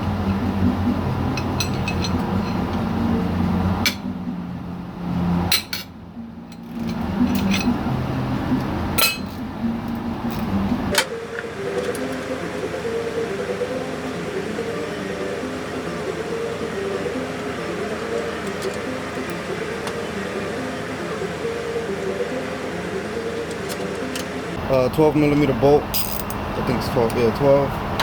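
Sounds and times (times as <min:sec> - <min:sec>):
background music: 0:00.0 - 0:28.0
metal tools clinking on engine: 0:01.3 - 0:02.9, 0:05.4 - 0:05.9, 0:06.5 - 0:08.0, 0:09.0 - 0:14.6, 0:16.6 - 0:28.0.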